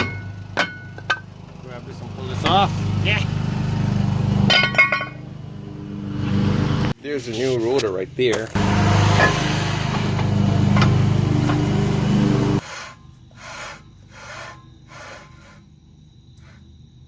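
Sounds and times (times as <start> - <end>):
power tool motor running: 8.5 - 12.6.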